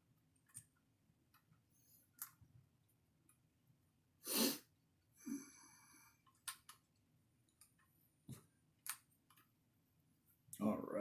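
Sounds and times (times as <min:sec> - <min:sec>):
clicks and taps of small parts: 0:00.4 - 0:02.4, 0:06.2 - 0:06.9, 0:07.5 - 0:09.5.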